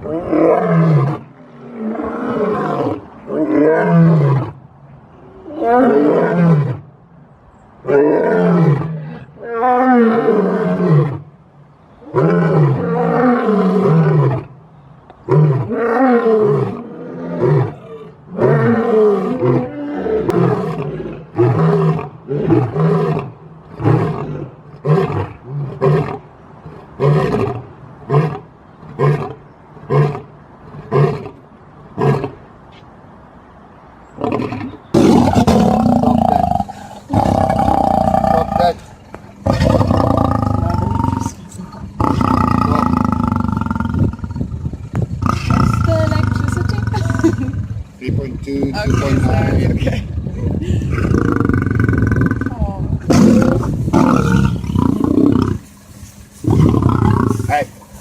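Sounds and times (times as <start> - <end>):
lion roaring and grunting: 0.0 - 4.6, 15.3 - 31.4, 34.2 - 47.8, 48.7 - 49.7, 50.9 - 55.6, 56.4 - 57.6.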